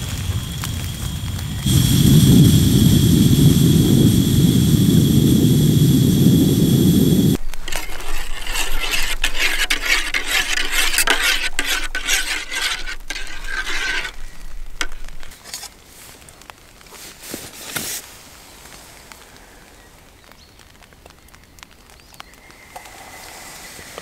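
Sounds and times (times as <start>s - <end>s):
spoon stirring in metal mug: 7.6s - 14.2s, 14.8s - 15.3s.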